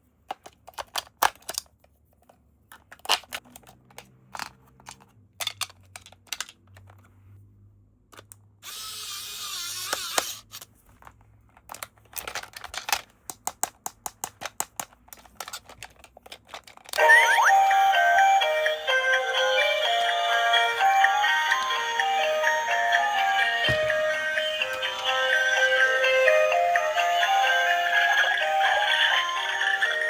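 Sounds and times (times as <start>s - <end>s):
plastic parts clicking and rattling: 0.2s - 7.1s, 10.6s - 17.0s.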